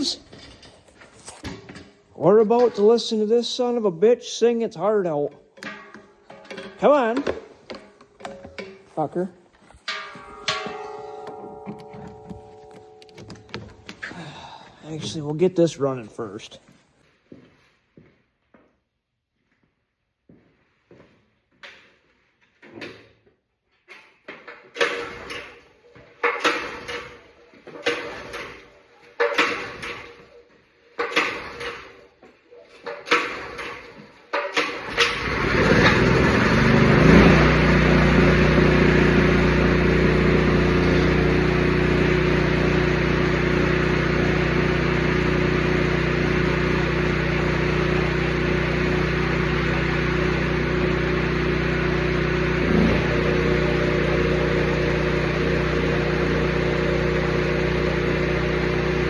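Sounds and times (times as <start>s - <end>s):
knocks and clatters: 5.4s - 9.0s, 9.6s - 14.1s, 23.9s - 30.4s, 31.0s - 37.5s
air compressor running: 29.2s - 30.3s, 31.0s - 32.0s, 32.8s - 59.0s.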